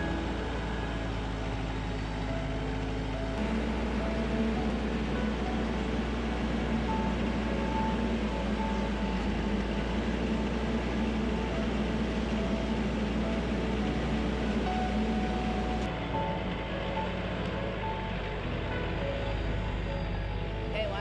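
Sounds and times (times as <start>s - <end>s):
background music: 0.0s - 21.0s
vehicle engine droning: 0.0s - 21.0s.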